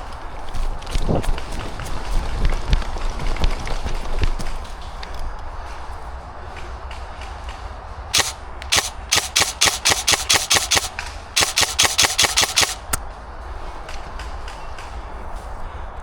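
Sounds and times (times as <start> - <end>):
airsoft rifle shots: 8.1 - 13.0.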